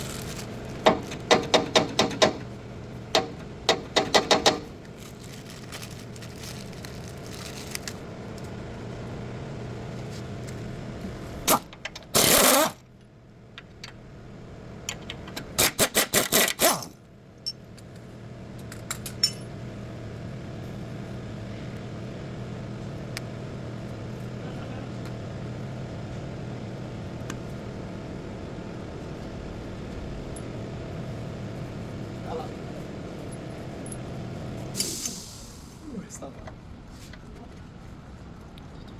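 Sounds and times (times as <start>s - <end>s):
steady low hum: 0.0s - 15.6s, 16.8s - 38.9s
loud short burst of noise: 34.8s - 35.8s.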